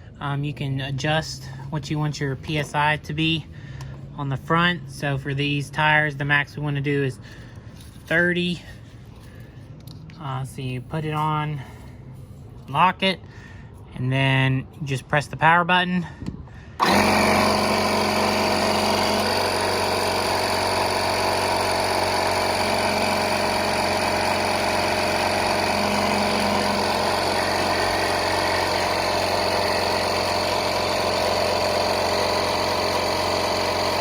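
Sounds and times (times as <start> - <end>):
electric air compressor running: 16.8 - 34.0.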